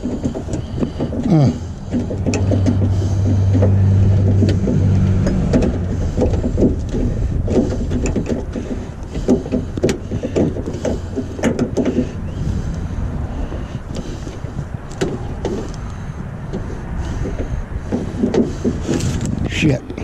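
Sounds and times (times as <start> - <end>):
low hum: 0.0 - 20.0.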